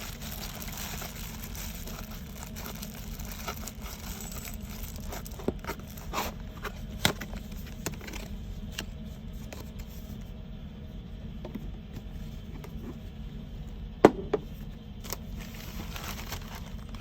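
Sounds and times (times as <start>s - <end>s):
packaging scraping and clicking: 0.0s - 9.9s, 15.0s - 17.0s
steady low hum: 0.0s - 17.0s.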